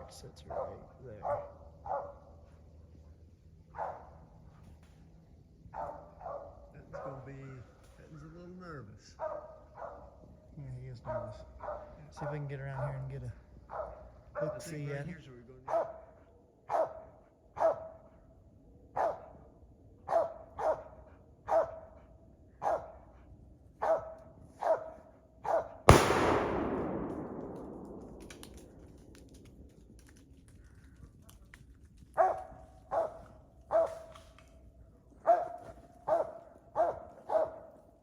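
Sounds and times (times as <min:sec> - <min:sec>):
dog barking: 0:00.0 - 0:02.5, 0:03.7 - 0:04.2, 0:05.7 - 0:07.7, 0:09.2 - 0:10.2, 0:11.0 - 0:12.4, 0:13.6 - 0:14.7, 0:15.6 - 0:18.3, 0:18.9 - 0:25.8, 0:32.2 - 0:34.2, 0:35.2 - 0:37.8
shotgun shot: 0:25.9 - 0:29.8.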